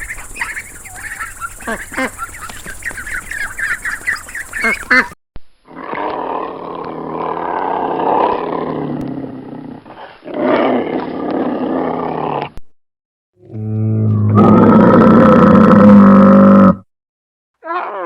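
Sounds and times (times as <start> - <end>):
large animal low calls: 13.4 - 16.8.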